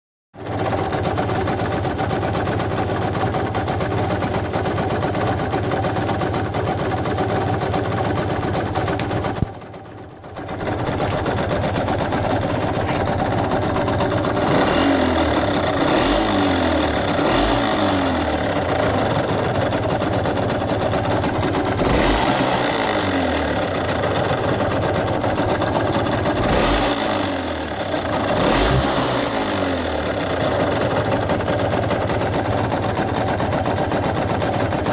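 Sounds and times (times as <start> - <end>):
two-stroke engine revving: 0.4 - 34.9.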